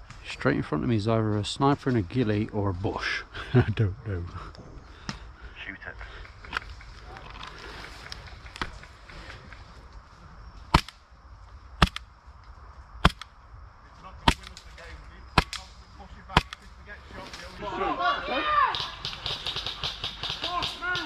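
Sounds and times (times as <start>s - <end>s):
airsoft gun shots: 10.7s - 11.0s, 11.8s - 12.1s, 13.0s - 13.3s, 16.3s - 16.6s.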